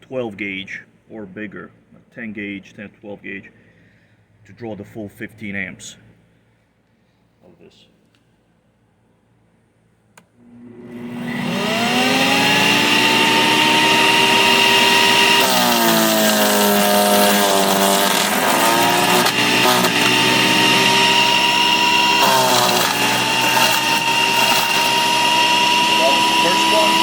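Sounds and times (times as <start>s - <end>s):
wood chipper motor whining: 10.4s - 27.0s.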